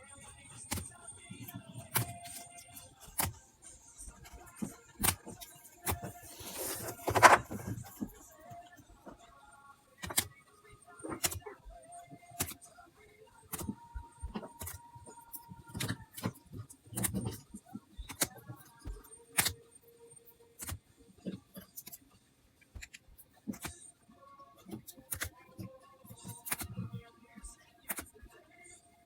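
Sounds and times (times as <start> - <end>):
cards and plastic holders clicking: 0.4 - 3.4, 4.1 - 8.2, 10.0 - 10.4, 11.0 - 12.7, 13.4 - 19.7, 20.6 - 23.9, 24.6 - 27.0, 27.8 - 28.3.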